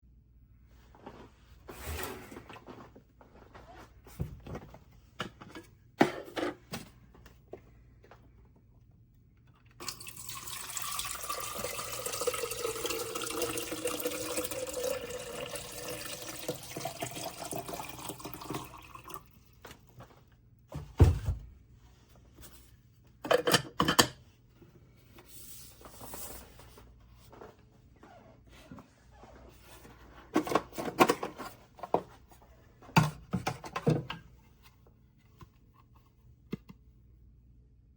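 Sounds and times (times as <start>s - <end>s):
tap water filling a container: 9.8s - 19.8s.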